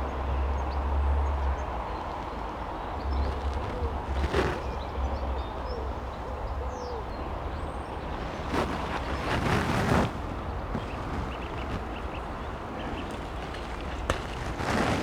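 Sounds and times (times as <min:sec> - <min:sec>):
small birds chirping: 0:01.4 - 0:15.0
loud rustling: 0:08.0 - 0:15.0.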